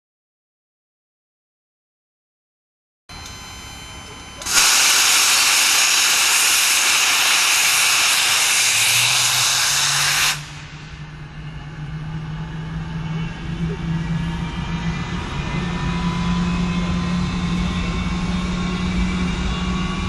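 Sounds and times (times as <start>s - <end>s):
jet engine spooling hum: 3.1s - 20.0s
jet engine hiss: 4.4s - 11.1s.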